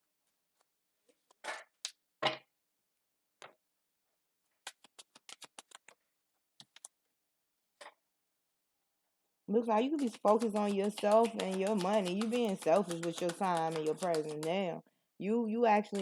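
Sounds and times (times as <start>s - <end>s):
cards slapping and sliding: 0.6s - 2.0s, 4.6s - 6.0s, 6.6s - 7.0s, 9.9s - 14.6s
crisp clicks of riffled cards: 4.6s - 6.0s, 6.6s - 7.0s.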